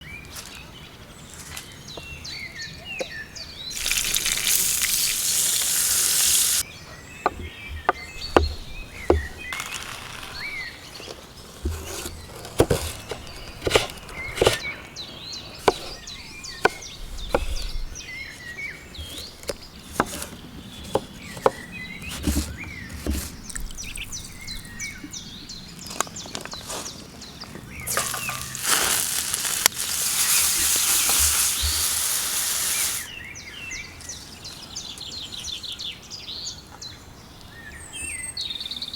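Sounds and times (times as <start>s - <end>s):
birds chirping: 0.0s - 38.9s
loud steady hiss: 3.7s - 6.6s, 27.9s - 33.1s
knife chopping on cutting board: 7.3s - 10.1s, 15.6s - 16.0s, 16.6s - 17.7s.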